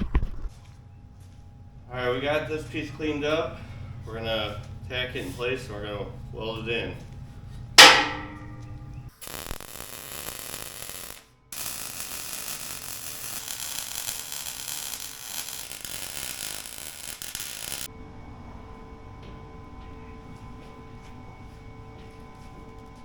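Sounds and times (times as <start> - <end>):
metallic clang ringing: 7.8 - 9.0
welding arc crackling: 7.8 - 17.9.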